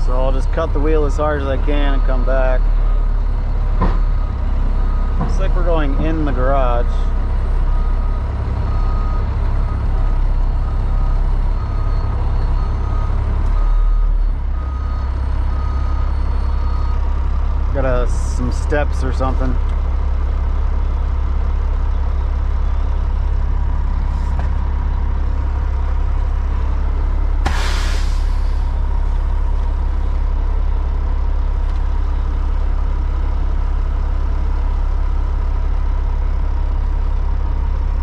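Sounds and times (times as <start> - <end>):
diesel engine droning: 0.0 - 38.0
air brakes hissing: 27.4 - 28.8.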